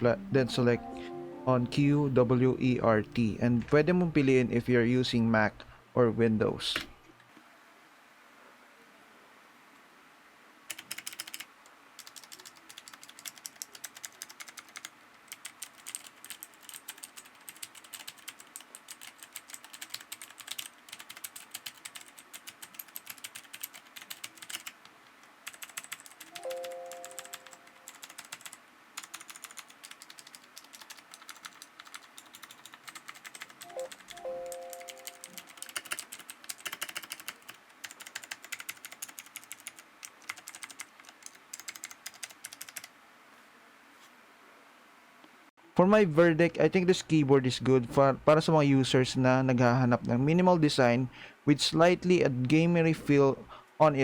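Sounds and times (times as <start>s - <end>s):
mechanical keyboard key clicks: 34.9s - 42.9s.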